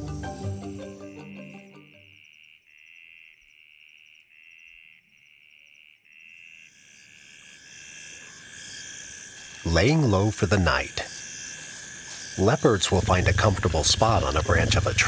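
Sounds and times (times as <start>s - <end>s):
music: 0.0s - 2.1s
higher fine insect trill: 0.0s - 15.0s
insects trilling: 0.0s - 15.0s.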